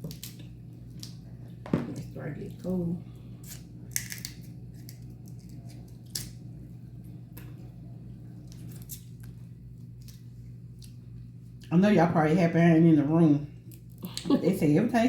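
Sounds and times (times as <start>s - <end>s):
steady low hum: 0.0s - 15.0s
crisp eating clicks and cracks: 3.4s - 6.4s.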